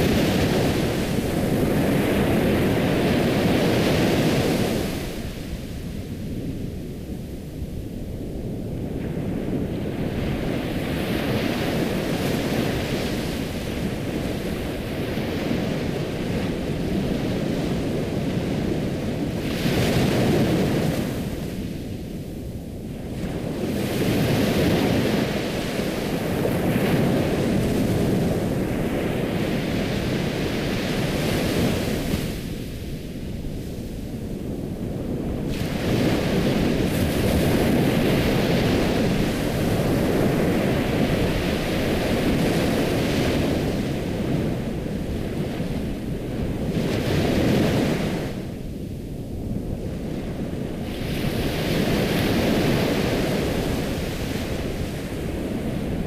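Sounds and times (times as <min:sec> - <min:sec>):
ocean waves breaking: 0:00.0 - 0:05.9, 0:34.8 - 0:56.0.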